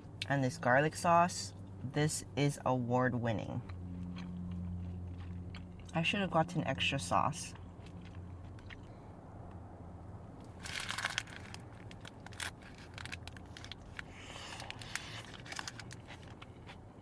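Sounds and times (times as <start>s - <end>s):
wrapper crinkling and rustling: 10.5s - 16.4s.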